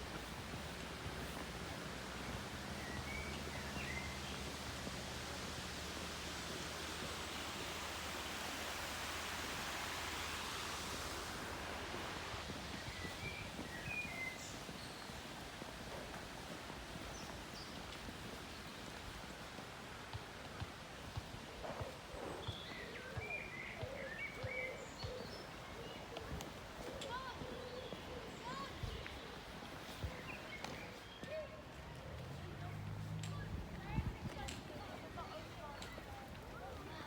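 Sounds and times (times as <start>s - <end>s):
steady rushing sound: 4.6s - 14.5s.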